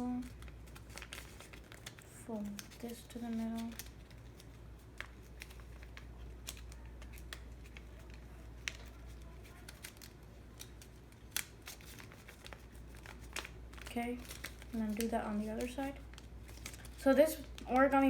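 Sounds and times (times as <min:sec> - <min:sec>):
paper being folded and creased: 0:00.0 - 0:18.0
paper snap: 0:05.0 - 0:18.0.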